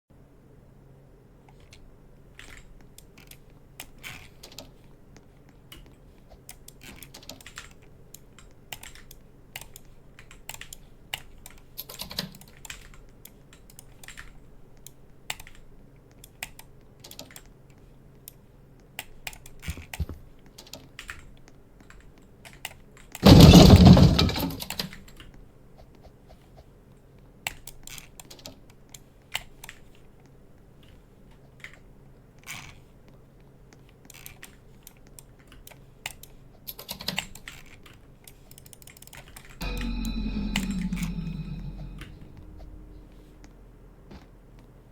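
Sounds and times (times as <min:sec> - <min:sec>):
loud burst of noise: 0:23.2 - 0:24.6, 0:39.6 - 0:43.5.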